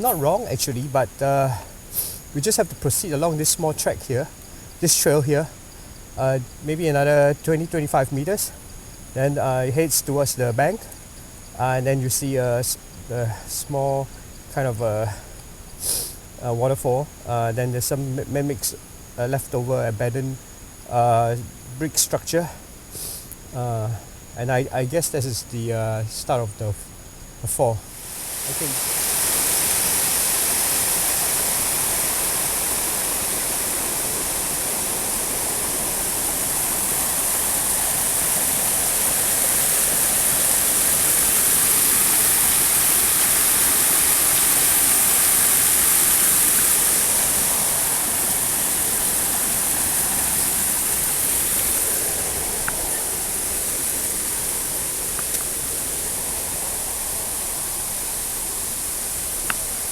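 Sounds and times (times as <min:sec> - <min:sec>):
waterfall rushing and splashing: 0:00.0 - 0:05.8, 0:27.8 - 0:59.9.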